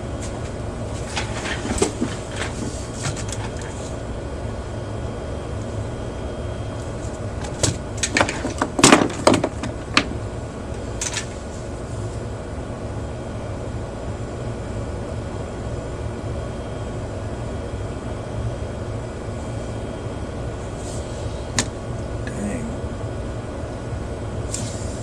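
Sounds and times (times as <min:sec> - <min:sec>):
steady low hum: 0:00.0 - 0:25.0
handling noise on workbench: 0:00.2 - 0:03.9, 0:07.1 - 0:10.1.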